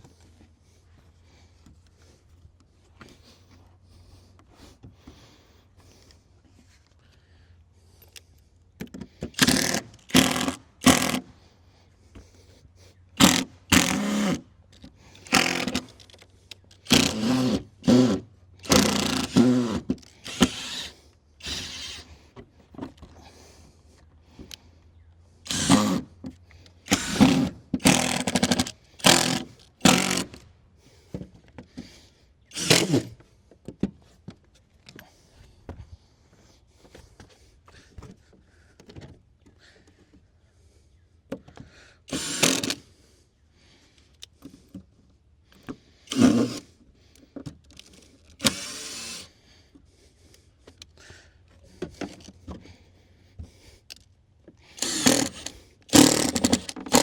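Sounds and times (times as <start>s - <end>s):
power drill running: 9.3s - 11.3s, 13.2s - 14.5s, 15.2s - 16.0s, 16.8s - 22.2s, 25.5s - 26.1s, 26.8s - 30.4s, 32.5s - 33.2s, 42.1s - 42.8s, 46.1s - 46.8s, 48.4s - 49.4s, 54.6s - 57.0s.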